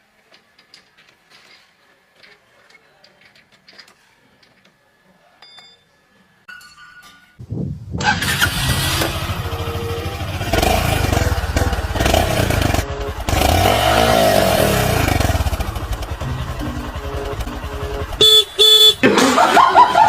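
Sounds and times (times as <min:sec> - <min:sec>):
motorcycle engine running: 0:08.0 - 0:19.1.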